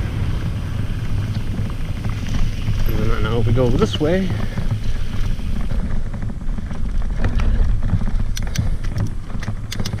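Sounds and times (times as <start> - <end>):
bike tyres on dirt: 0.0 - 10.0
bike rattling clicks: 0.1 - 10.0.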